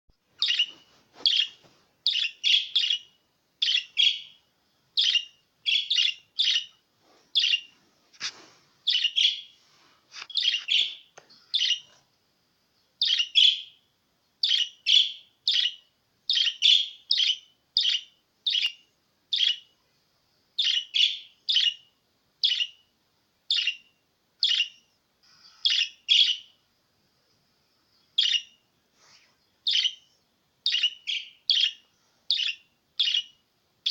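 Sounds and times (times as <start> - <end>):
budgerigar chirping: 0.4 - 4.4, 5.0 - 6.7, 7.4 - 7.7, 8.9 - 9.5, 10.3 - 11.9, 13.0 - 13.8, 14.4 - 19.7, 20.6 - 22.8, 23.5 - 24.8, 25.5 - 26.6, 28.2 - 28.6, 29.6 - 33.9.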